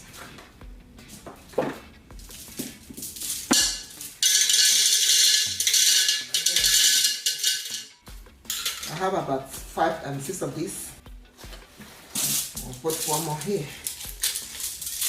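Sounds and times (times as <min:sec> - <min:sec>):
marbles poured into a pot: 0:03.1 - 0:07.9, 0:12.2 - 0:15.0.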